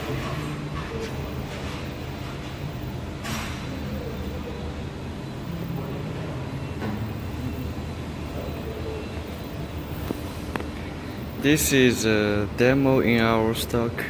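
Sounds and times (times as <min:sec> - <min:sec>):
low rumble of background noise: 0:00.0 - 0:14.0.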